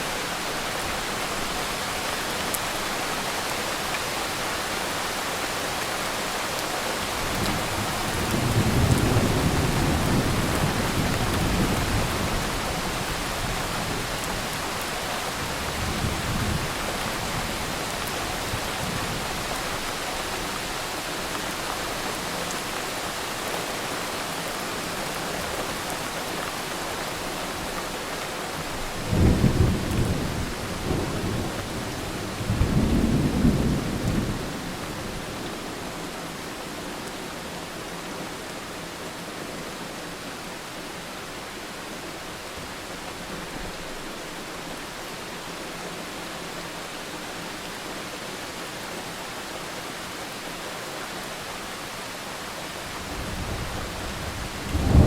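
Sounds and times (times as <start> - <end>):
heavy rain: 0.0 - 55.0
thunder rumbling: 53.0 - 55.0.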